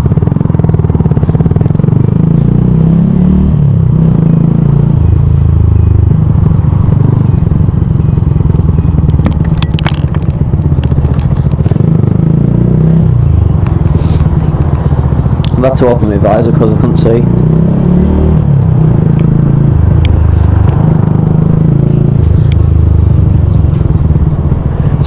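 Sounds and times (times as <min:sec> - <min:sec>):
motorcycle engine running: 0:00.0 - 0:25.0
road noise: 0:00.0 - 0:25.0.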